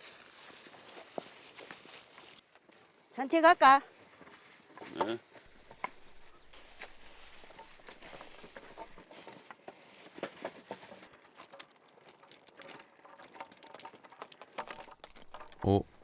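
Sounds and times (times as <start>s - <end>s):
footsteps on dry leaves: 0.0s - 11.2s.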